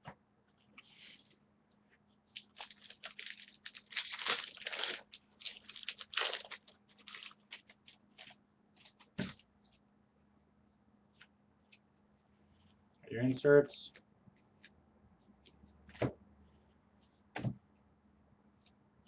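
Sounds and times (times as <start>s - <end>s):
wrapper tearing and crinkling: 2.4s - 8.4s.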